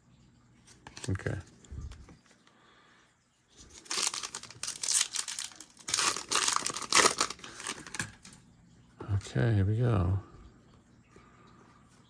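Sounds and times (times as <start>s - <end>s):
wrapper tearing and crinkling: 3.6s - 8.2s.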